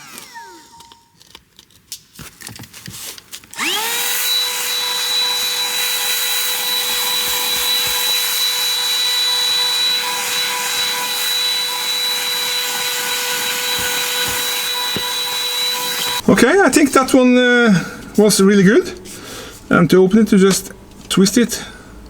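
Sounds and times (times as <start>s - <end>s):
handheld vacuum cleaner whine: 0.0s - 1.2s, 3.6s - 16.3s.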